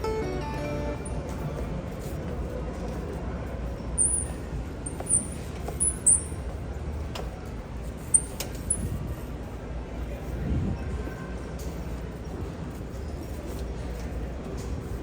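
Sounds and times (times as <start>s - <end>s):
store hum: 0.0s - 15.0s.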